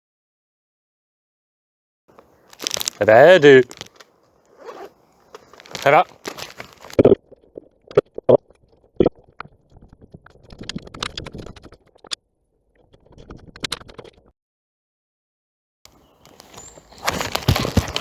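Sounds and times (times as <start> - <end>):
footsteps through undergrowth: 2.1 - 7.0, 15.9 - 18.0.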